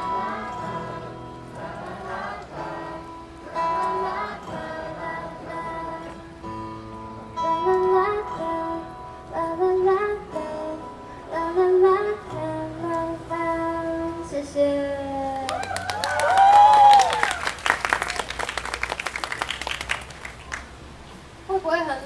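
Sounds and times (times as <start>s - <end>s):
woman singing: 0.0s - 6.4s, 7.4s - 15.6s
guitar accompaniment: 0.0s - 17.2s.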